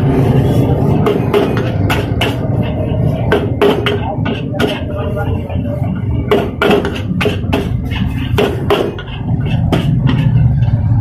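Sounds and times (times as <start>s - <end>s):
low rumble: 0.0s - 8.3s, 9.0s - 11.0s
metal spatula striking a wok: 0.9s - 5.0s, 5.9s - 10.9s.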